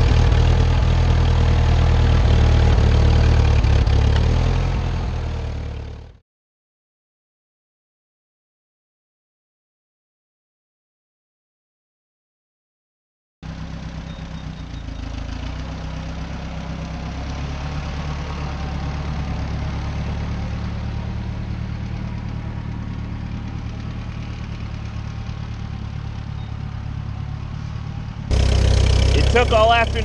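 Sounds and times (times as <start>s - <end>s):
tractor engine running: 0.0s - 6.2s, 13.4s - 30.0s.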